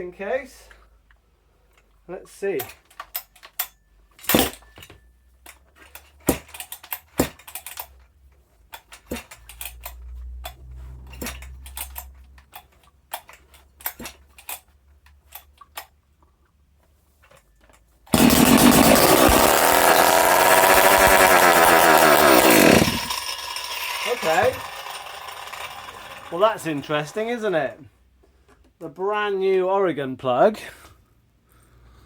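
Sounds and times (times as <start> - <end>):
chainsaw running loudly: 18.1 - 27.6.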